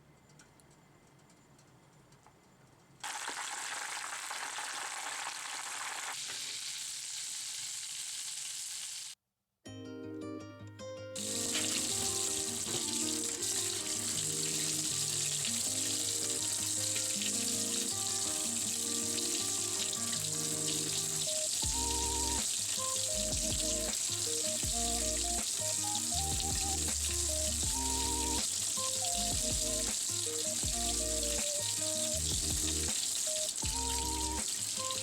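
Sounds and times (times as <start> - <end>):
food sizzling: 3.0 - 9.2, 11.2 - 35.0
background music: 9.7 - 35.0.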